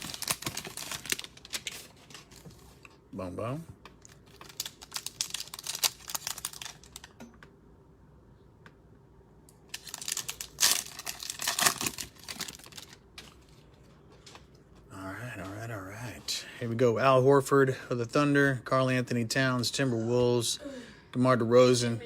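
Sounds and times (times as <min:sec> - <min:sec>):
cellophane wrapper crinkling and tearing: 0:00.0 - 0:02.9, 0:04.0 - 0:07.2, 0:09.6 - 0:13.7.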